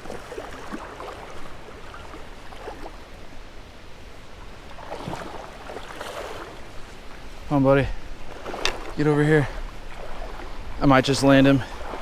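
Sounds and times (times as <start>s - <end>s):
water gurgles: 0.0s - 3.2s
creek water rushing over rapids: 0.0s - 12.0s.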